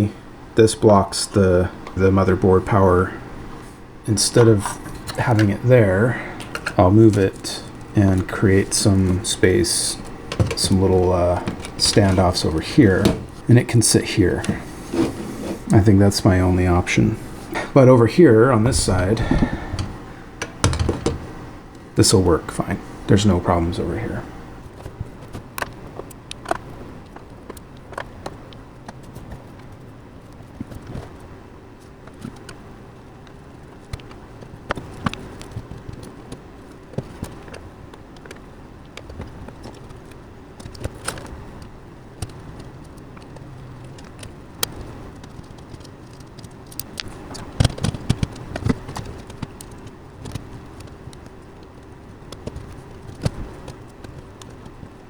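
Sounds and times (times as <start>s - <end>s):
faint steady hum: 0.0s - 55.0s
computer parts clicking and rattling: 4.3s - 13.6s, 18.6s - 21.3s, 33.3s - 55.0s.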